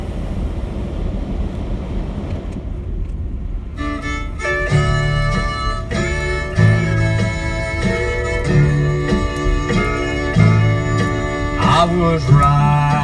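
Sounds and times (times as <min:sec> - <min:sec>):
instrumental country music: 0:03.8 - 0:13.0.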